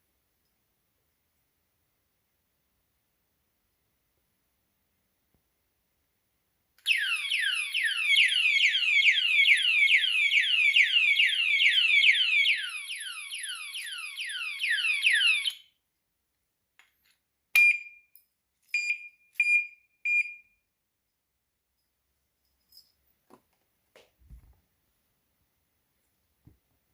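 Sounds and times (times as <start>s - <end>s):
alarm siren whooping: 6.9s - 15.6s.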